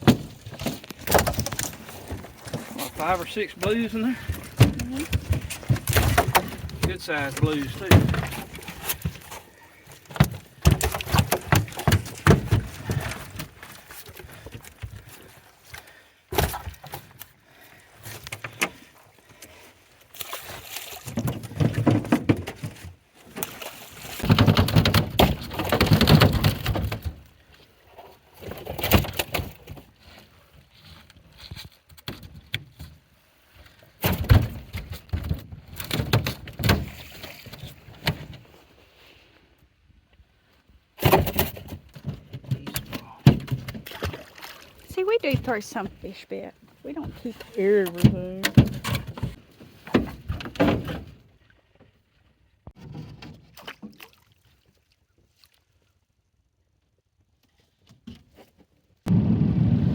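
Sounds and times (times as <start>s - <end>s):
fish thumping in a boat: 3.6s - 13.6s.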